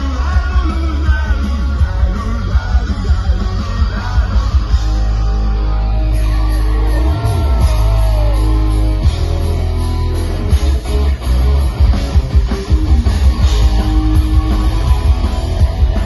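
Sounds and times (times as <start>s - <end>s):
electric guitars: 0.0s - 16.0s
heavy bass: 0.0s - 16.0s.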